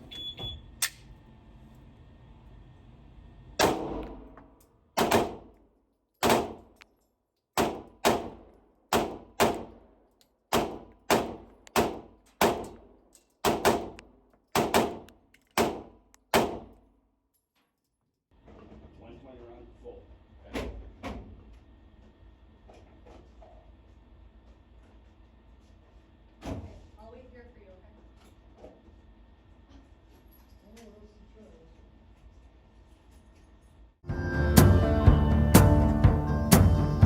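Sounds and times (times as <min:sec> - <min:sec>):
pistol shots: 0:03.6 - 0:04.3, 0:05.0 - 0:05.6, 0:06.2 - 0:06.8, 0:07.6 - 0:09.9, 0:10.5 - 0:16.8.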